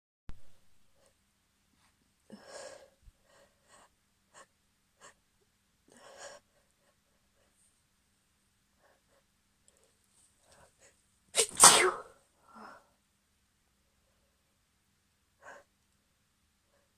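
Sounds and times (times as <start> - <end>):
faint sniffs: 10.5 - 12.1.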